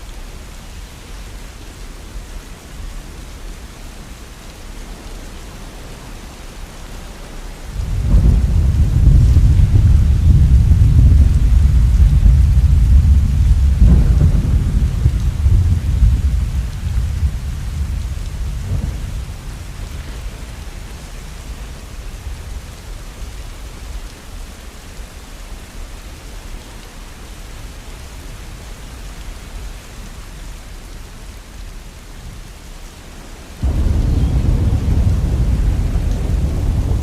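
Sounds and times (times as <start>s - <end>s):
rain falling: 0.0s - 37.0s
thunder rumbling: 7.7s - 22.8s, 33.6s - 37.0s.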